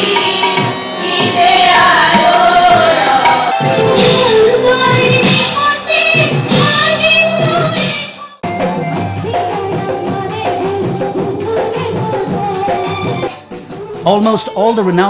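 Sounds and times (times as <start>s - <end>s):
instrumental music with percussion: 0.0s - 15.0s
person singing: 9.3s - 15.0s.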